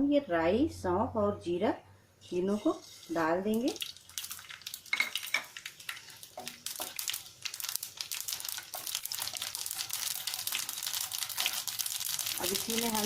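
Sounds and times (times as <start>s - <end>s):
seeds crackling in hot oil: 2.3s - 13.0s.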